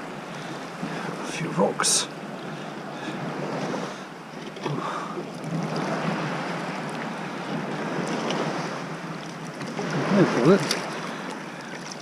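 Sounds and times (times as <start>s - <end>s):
sea water sloshing: 0.0s - 12.0s
water splash: 8.0s - 12.0s.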